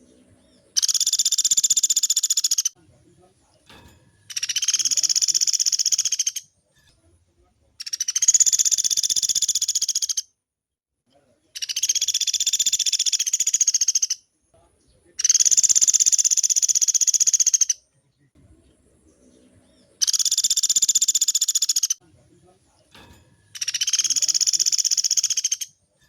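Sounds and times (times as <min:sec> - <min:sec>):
woodpecker rattling calls: 0:00.0 - 0:02.8, 0:04.3 - 0:06.5, 0:07.8 - 0:10.3, 0:11.6 - 0:14.3, 0:15.2 - 0:17.9, 0:19.7 - 0:22.0, 0:23.5 - 0:25.8.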